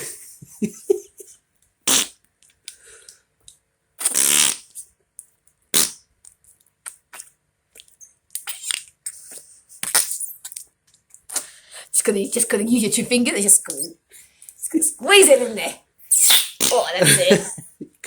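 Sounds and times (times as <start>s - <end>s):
noise putty fart noises: 1.8s - 2.2s, 4.0s - 4.8s, 5.7s - 6.0s, 8.4s - 10.3s, 16.1s - 16.9s.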